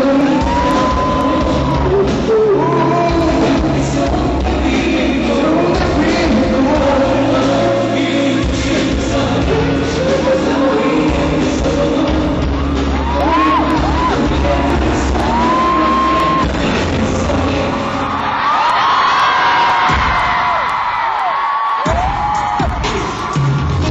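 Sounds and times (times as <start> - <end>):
crowd shouting: 0.0 - 3.2
live pop band with singing: 0.0 - 23.9.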